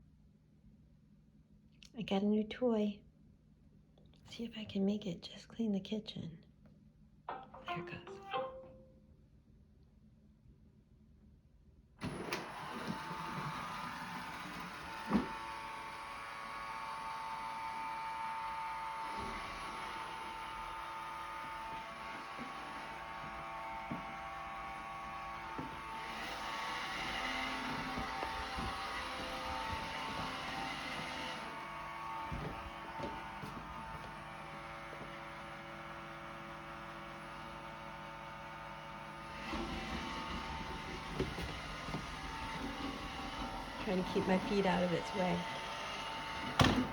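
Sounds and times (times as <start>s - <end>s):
robot vacuum motor whining: 12.0s - 46.9s.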